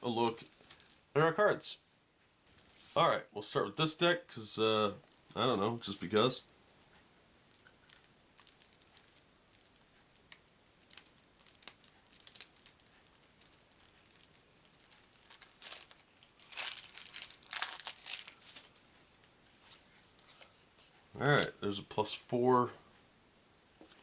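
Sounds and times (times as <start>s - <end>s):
plastic wrapper crinkling: 0.1s - 1.1s, 4.7s - 18.8s.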